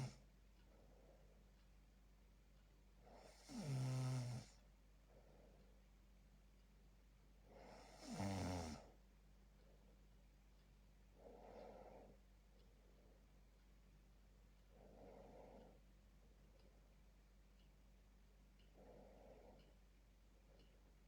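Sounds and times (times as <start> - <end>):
person snoring: 3.2 - 4.6, 7.8 - 8.8
soft breath out: 11.2 - 12.2.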